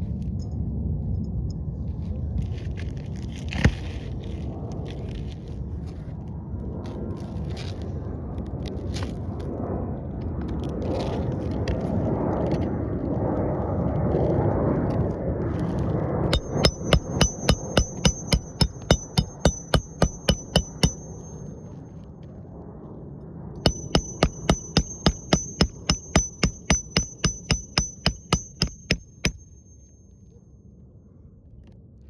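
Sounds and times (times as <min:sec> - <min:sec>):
hammer blows: 0:16.3 - 0:21.4, 0:23.7 - 0:29.9.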